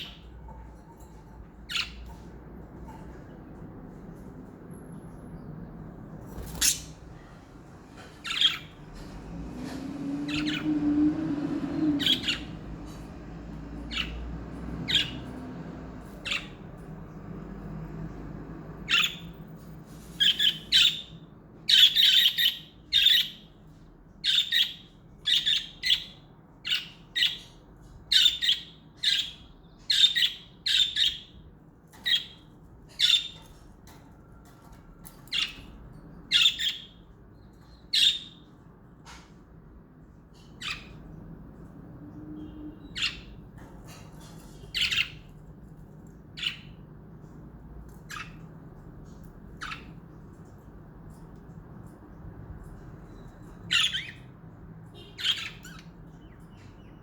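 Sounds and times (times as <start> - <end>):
budgerigars chirping: 0.0 - 0.4, 1.6 - 2.2, 6.4 - 7.0, 8.2 - 8.7, 10.3 - 10.7, 12.0 - 12.6, 13.8 - 15.4, 16.2 - 16.6, 18.8 - 19.3, 20.2 - 23.6, 24.2 - 31.4, 32.0 - 33.6, 35.3 - 38.5, 40.4 - 41.1, 42.4 - 43.4, 44.4 - 45.4, 46.4 - 46.8, 48.0 - 48.5, 49.6 - 50.0, 53.1 - 54.3, 54.9 - 57.0.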